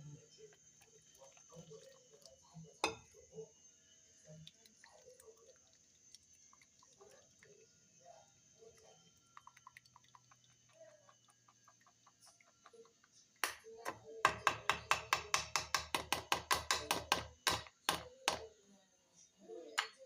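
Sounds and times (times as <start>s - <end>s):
utensil knocking against a strainer: 9.4s - 18.5s.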